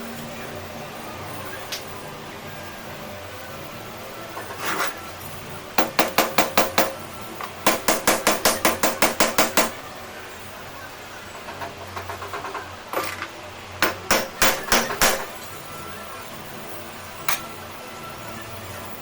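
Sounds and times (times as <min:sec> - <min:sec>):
hammer tapping: 0:05.8 - 0:07.0, 0:07.6 - 0:09.8, 0:13.8 - 0:15.3.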